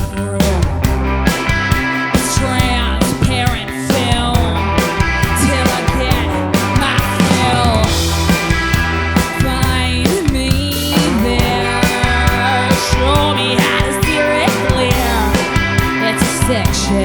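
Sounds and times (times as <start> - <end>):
bass guitar: 0.0 - 17.0
drum kit: 0.0 - 17.0
electric guitar: 0.0 - 17.0.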